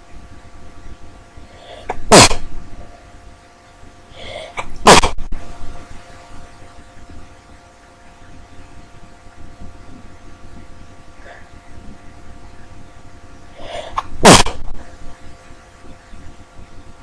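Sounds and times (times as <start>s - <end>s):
short in-breath: 1.5s - 2.0s, 4.1s - 4.7s, 13.6s - 14.1s
woman sneezing: 4.9s - 5.1s.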